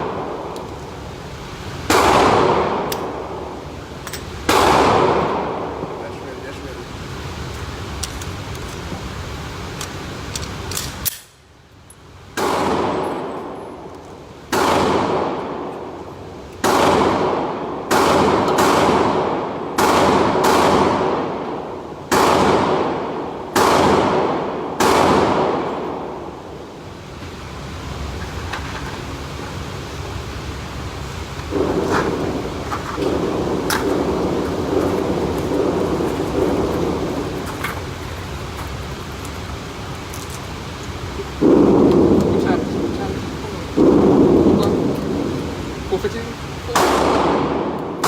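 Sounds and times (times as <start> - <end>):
echoing gunshots: 1.9 - 3.5, 4.5 - 6.0, 12.4 - 13.6, 14.5 - 16.0, 16.6 - 26.4, 31.5 - 37.4, 41.4 - 45.4, 46.7 - 48.0.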